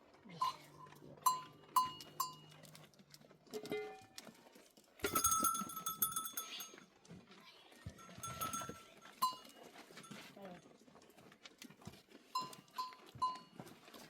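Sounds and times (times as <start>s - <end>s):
animal bells clanking: 0.4s - 2.9s, 5.0s - 6.9s, 7.8s - 10.4s, 12.4s - 13.7s.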